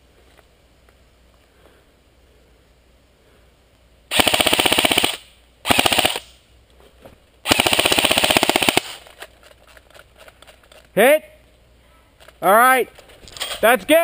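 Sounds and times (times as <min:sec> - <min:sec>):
airsoft gun firing bursts: 0:04.1 - 0:06.3, 0:07.4 - 0:09.1.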